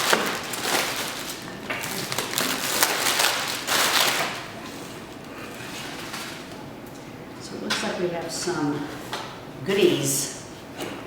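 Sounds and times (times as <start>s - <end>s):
shrink wrap crinkling and tearing: 0.0s - 6.6s.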